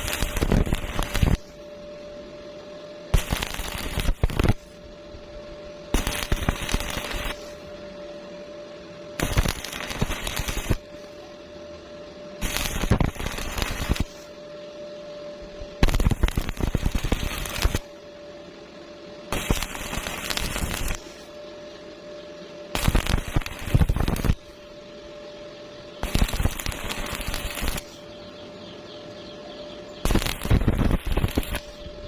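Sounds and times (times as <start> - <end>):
welding arc crackling: 0.0 - 1.7, 3.1 - 4.8, 5.9 - 7.7, 9.1 - 11.2, 12.4 - 14.4, 15.4 - 18.0, 19.3 - 21.4, 22.7 - 24.8, 26.0 - 28.0, 30.0 - 32.0
faint steady hum: 0.0 - 32.0.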